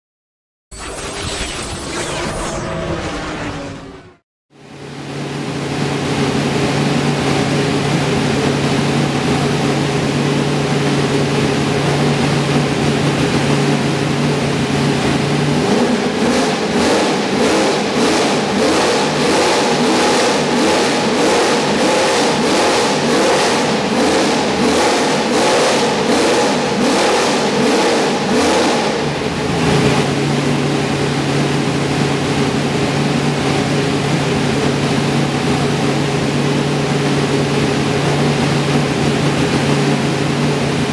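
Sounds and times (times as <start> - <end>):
race car engine revving: 5.1 - 40.9.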